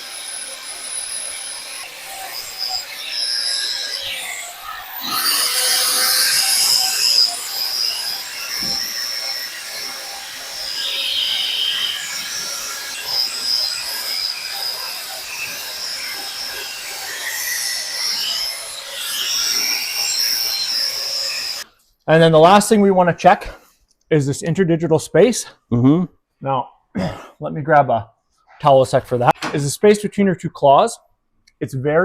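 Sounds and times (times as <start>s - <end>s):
grinder whining and rasping on hoof: 0.0s - 21.8s.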